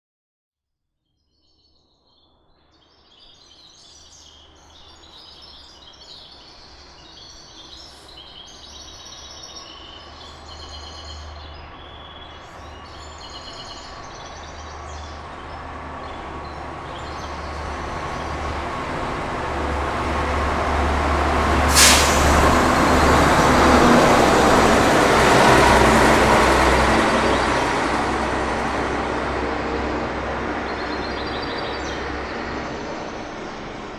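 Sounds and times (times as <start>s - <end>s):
birds chirping: 2.8s - 18.7s
diesel bus engine passing: 6.8s - 33.9s
short sharp hiss: 21.7s - 23.0s.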